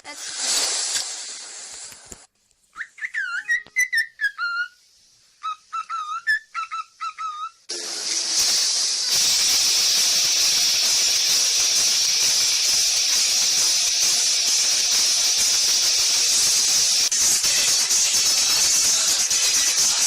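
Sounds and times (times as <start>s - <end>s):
loud steady hiss: 0.0s - 2.3s, 7.7s - 20.0s
whistled chirps: 2.8s - 4.8s, 5.4s - 7.6s.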